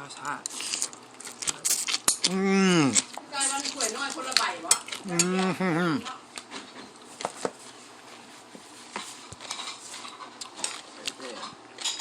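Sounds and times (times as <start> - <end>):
wavering voice: 2.3 - 3.0, 5.0 - 6.1.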